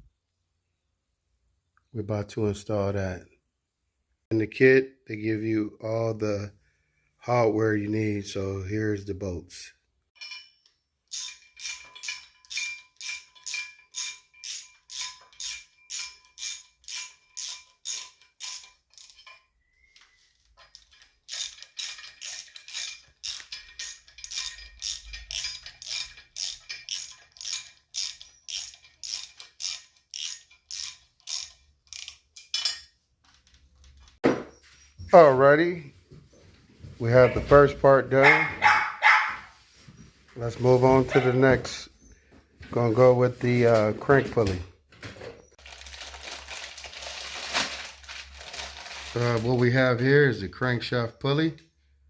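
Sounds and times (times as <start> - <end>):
ratchet wrench clicking: 11.1 - 19.4, 20.7 - 32.8.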